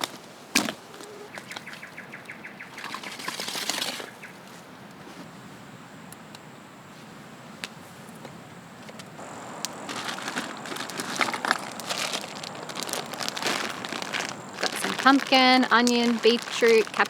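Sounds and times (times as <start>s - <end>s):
steady low hiss: 4.3s - 17.0s
wrapping crinkling: 9.2s - 17.0s.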